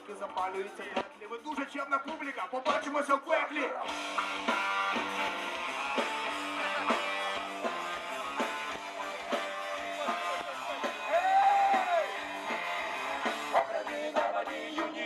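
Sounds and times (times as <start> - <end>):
rock band playing live: 3.8 - 15.0
electric guitar strumming chords: 3.9 - 11.1.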